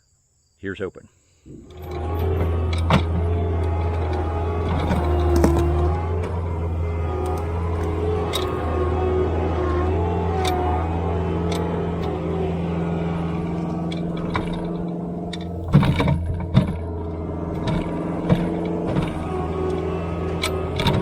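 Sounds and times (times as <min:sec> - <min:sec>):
loader engine running: 0:01.5 - 0:21.0
sharp metal clanks and knocks: 0:13.0 - 0:21.0.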